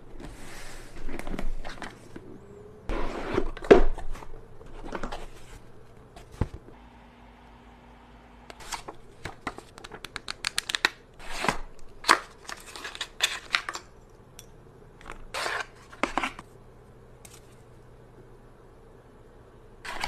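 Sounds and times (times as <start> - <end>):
rustling and sliding scrapes: 0.0 - 6.6, 15.3 - 16.5.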